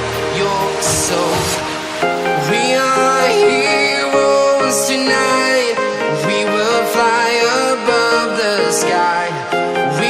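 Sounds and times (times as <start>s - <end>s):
pop song with vocals and guitar: 0.0s - 10.0s.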